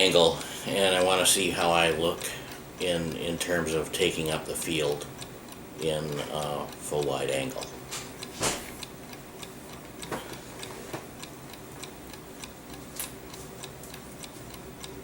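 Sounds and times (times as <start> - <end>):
clock ticking: 0.0 - 15.0.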